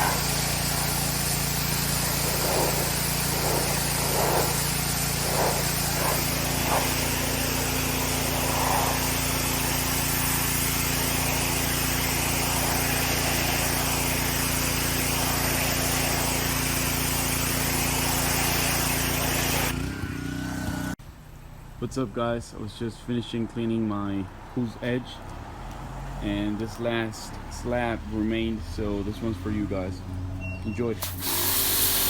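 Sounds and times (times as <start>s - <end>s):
spray jet hissing: 0.0s - 19.7s, 31.0s - 32.0s
pressure washer engine running: 0.0s - 21.0s, 31.0s - 32.0s.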